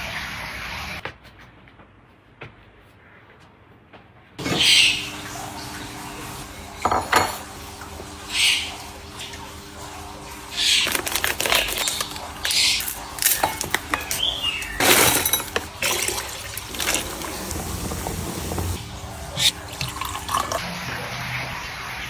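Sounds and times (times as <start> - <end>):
water running and splashing: 4.4 - 22.0.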